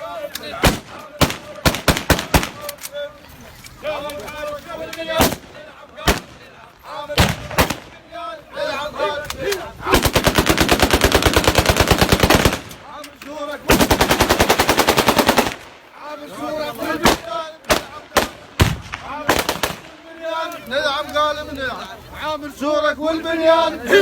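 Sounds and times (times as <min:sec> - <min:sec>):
voices: 0:00.0 - 0:24.0
gunshots: 0:00.4 - 0:02.8, 0:05.1 - 0:08.0, 0:09.5 - 0:13.0, 0:13.6 - 0:15.8, 0:16.9 - 0:20.0
rapid automatic gunfire: 0:00.6 - 0:02.6, 0:09.9 - 0:12.8, 0:13.7 - 0:15.7.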